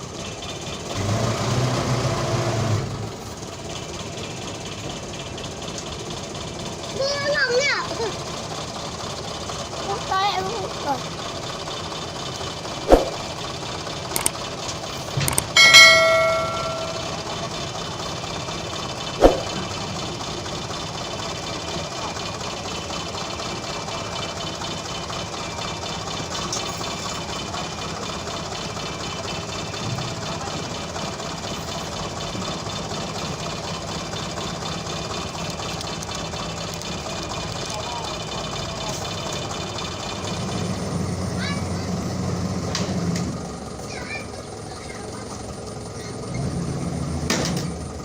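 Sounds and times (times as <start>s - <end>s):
truck engine running: 0.0s - 48.0s
low engine drone: 12.4s - 22.7s
metal clang ringing: 15.2s - 17.2s.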